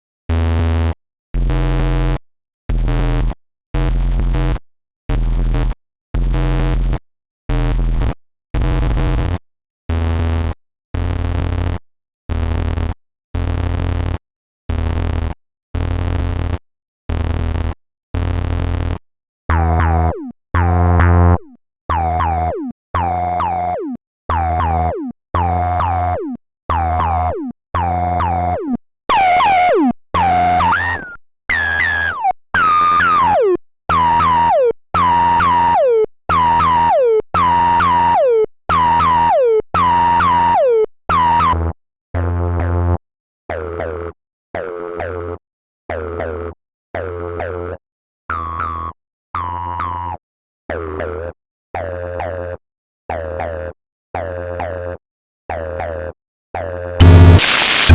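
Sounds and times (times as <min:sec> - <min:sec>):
distorted synthesizer notes: 0:57.0 - 0:57.9.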